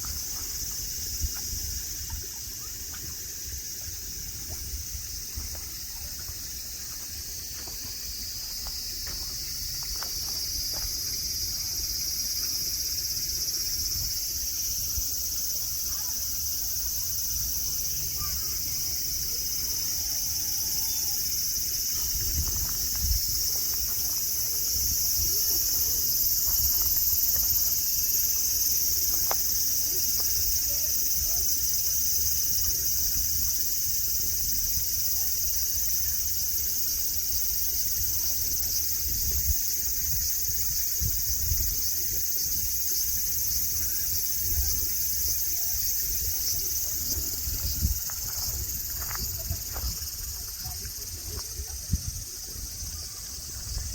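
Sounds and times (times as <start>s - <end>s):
cicadas singing: 0.0s - 53.9s.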